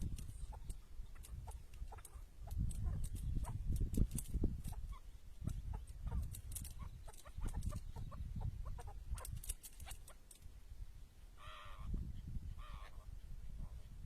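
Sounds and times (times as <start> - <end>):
partridge calls: 0.0 - 3.7, 4.6 - 10.2, 11.4 - 13.2.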